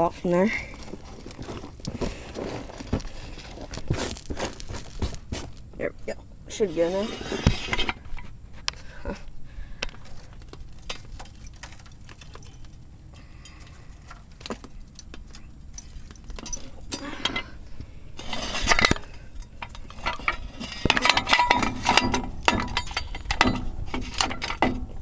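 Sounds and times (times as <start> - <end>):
metal clinking and clattering: 15.7 - 17.6, 18.3 - 25.0.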